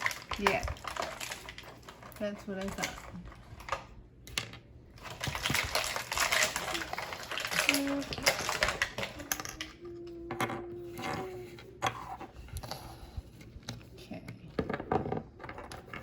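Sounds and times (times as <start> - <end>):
plastic toy parts clicking: 0.0 - 12.0.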